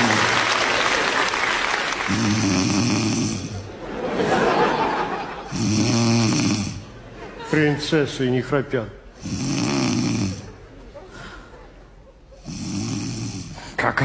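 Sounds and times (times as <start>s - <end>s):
woman snoring loudly: 2.1s - 3.6s, 5.5s - 6.8s, 9.2s - 10.5s, 12.4s - 13.6s.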